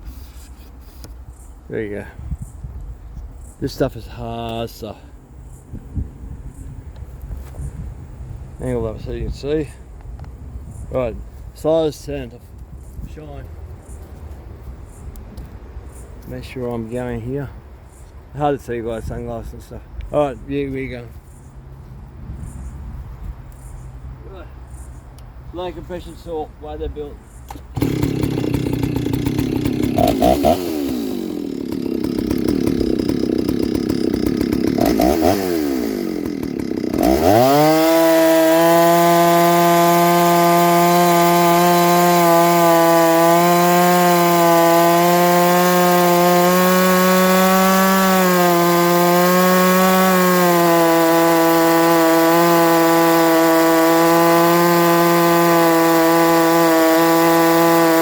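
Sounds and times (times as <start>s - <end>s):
chainsaw cutting wood: 27.5s - 58.0s.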